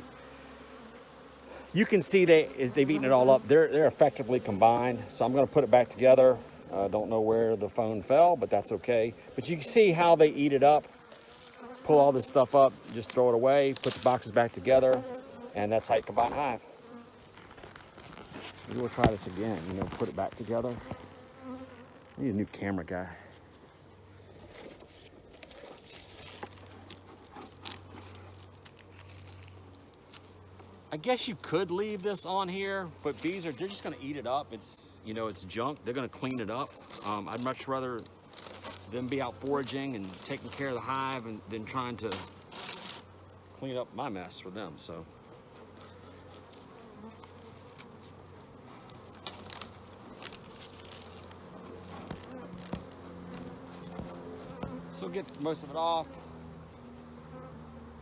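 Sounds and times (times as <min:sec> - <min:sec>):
honeybees buzzing: 0:00.0 - 0:58.0
paper rustling and tearing: 0:11.1 - 0:15.0, 0:17.3 - 0:21.0, 0:24.6 - 0:29.6, 0:38.3 - 0:41.2, 0:42.1 - 0:43.0, 0:48.7 - 0:54.6.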